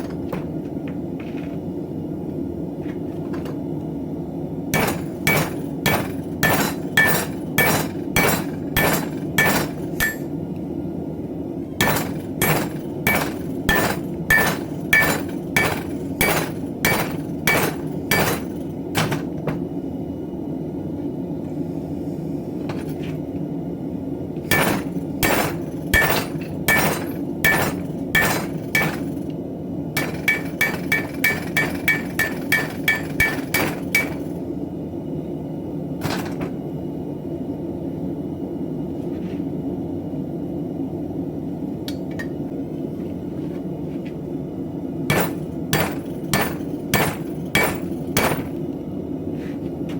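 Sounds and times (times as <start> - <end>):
hammer striking steel on anvil: 4.8 - 10.3, 11.8 - 19.3, 24.5 - 29.1, 30.0 - 34.3, 45.1 - 48.6.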